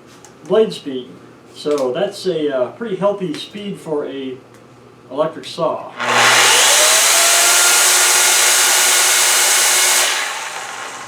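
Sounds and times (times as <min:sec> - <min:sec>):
electric chainsaw whining: 0:06.0 - 0:11.0.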